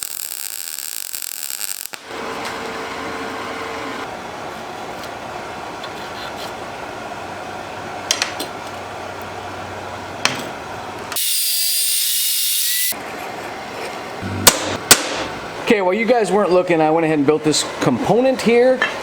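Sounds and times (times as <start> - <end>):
sharp knock: 14.3 - 15.3.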